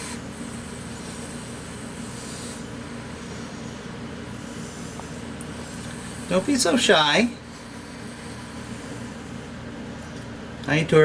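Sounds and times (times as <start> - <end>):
hiss: 0.0 - 3.7.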